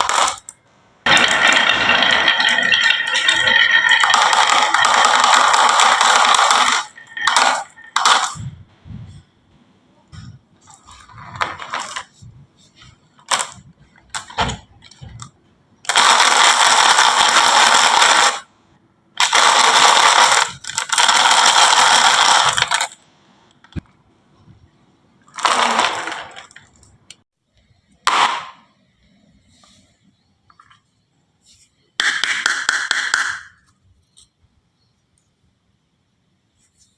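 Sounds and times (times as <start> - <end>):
marbles clicking and knocking: 0.0 - 8.6
marbles rolling on wooden tracks: 0.0 - 8.6, 10.6 - 12.1, 15.9 - 18.5, 19.2 - 23.0, 25.3 - 27.0.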